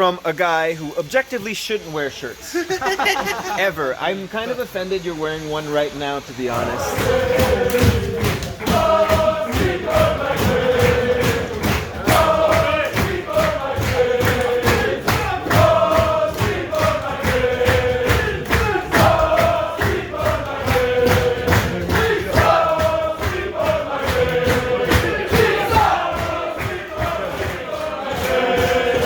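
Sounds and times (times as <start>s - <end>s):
music with steady beat: 6.5s - 29.0s.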